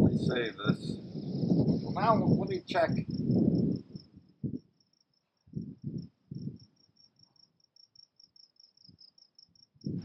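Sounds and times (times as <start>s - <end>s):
insect chirping: 0.1s - 10.0s.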